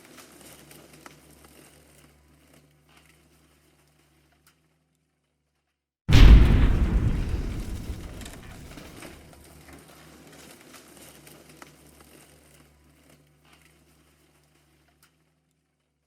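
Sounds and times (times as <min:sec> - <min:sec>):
crackling clicks: 0:06.1 - 0:08.9
explosion low rumble: 0:06.1 - 0:08.9.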